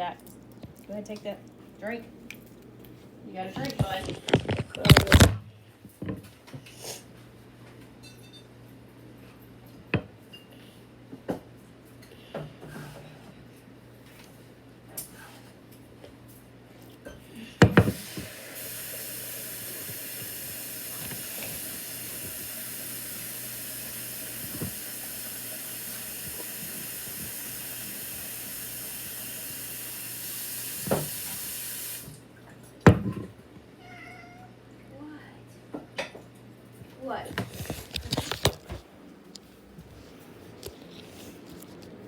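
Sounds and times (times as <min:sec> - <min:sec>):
tap water running into sink: 0:17.6 - 0:32.2.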